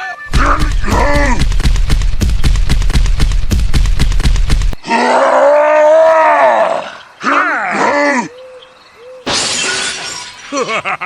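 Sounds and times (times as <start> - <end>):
rhythmic bass chugging: 0.3 - 4.8.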